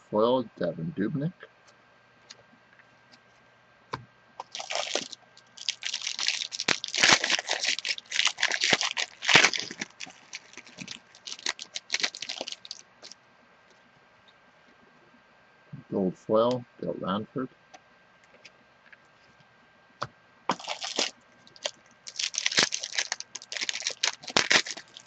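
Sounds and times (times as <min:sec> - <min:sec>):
card wrapper crinkling and tearing: 0:04.4 - 0:13.2, 0:20.5 - 0:25.0.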